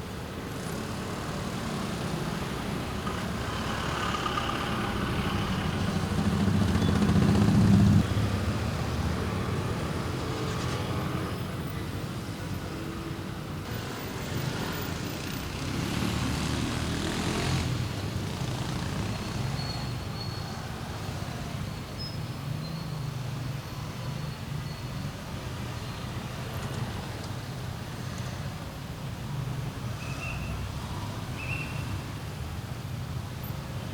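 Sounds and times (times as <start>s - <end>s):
cars and motorbikes passing: 0.0s - 33.9s.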